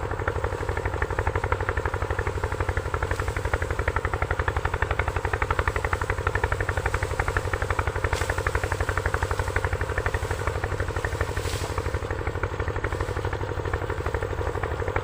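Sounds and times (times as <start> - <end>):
small engine running: 0.0 - 15.0.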